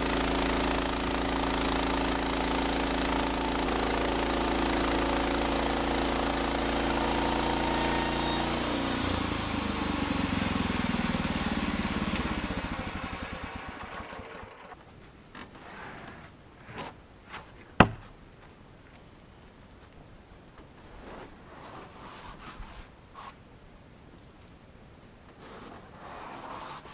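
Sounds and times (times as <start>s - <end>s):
sawmill engine running: 0.0s - 14.8s.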